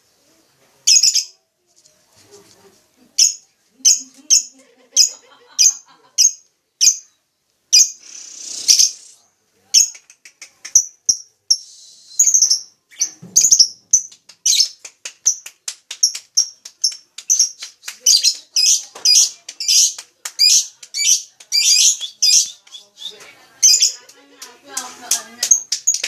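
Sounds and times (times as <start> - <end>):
bird chirping: 9.8 - 24.0.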